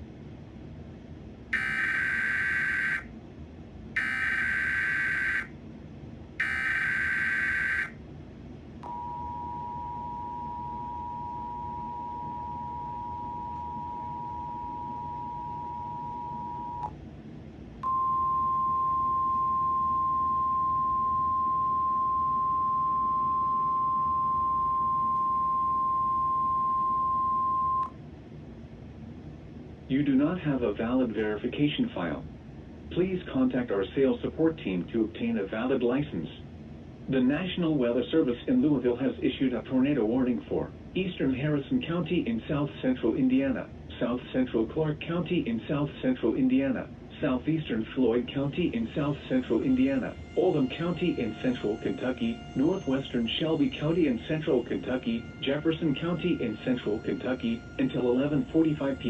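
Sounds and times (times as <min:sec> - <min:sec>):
harsh digital data bursts: 0:01.6 - 0:03.0, 0:04.0 - 0:05.5, 0:06.4 - 0:07.9
steady alert tone: 0:01.6 - 0:03.0, 0:04.0 - 0:05.5, 0:06.4 - 0:07.9
two-tone attention signal: 0:01.6 - 0:03.0, 0:04.0 - 0:05.5, 0:06.4 - 0:07.9, 0:17.8 - 0:27.9, 0:49.7 - 0:59.0.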